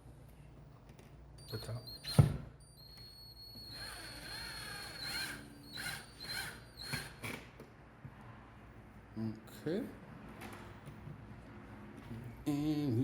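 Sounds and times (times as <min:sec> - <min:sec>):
power drill whining: 0:02.9 - 0:07.4.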